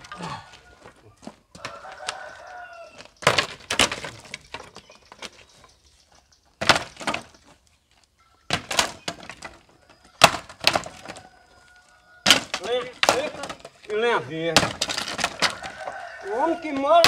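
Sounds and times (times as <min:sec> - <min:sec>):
firewood clattering onto pile: 0:00.0 - 0:01.0, 0:01.6 - 0:05.7, 0:06.5 - 0:07.6, 0:08.5 - 0:17.0.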